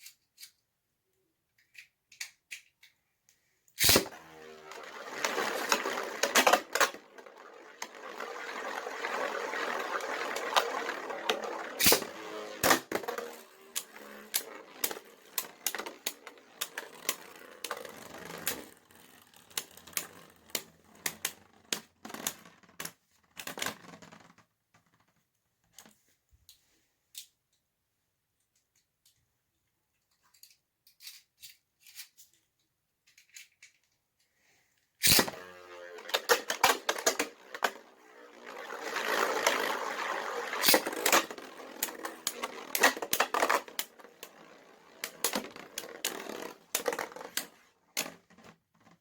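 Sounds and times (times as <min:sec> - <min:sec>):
spinning tops clacking: 0:03.8 - 0:22.3, 0:35.0 - 0:48.2
spinning tops whirring: 0:03.8 - 0:22.6, 0:35.0 - 0:48.5.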